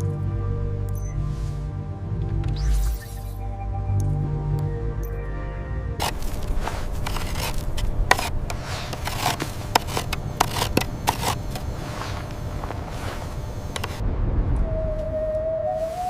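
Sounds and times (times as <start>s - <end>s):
steady low rumble: 0.0s - 15.9s
scraping and crunching: 6.0s - 14.0s.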